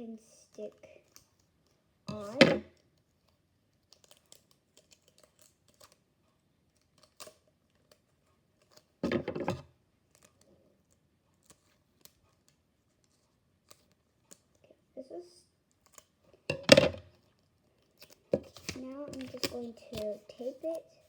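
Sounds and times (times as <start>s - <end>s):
sticky tape clicks and rustles: 17.8s - 20.8s.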